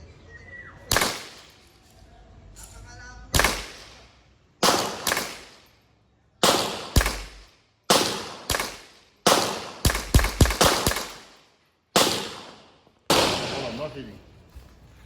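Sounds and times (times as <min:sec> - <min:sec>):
gunshots with echo: 0:00.9 - 0:01.5, 0:03.3 - 0:05.6, 0:06.4 - 0:11.4, 0:12.0 - 0:14.0.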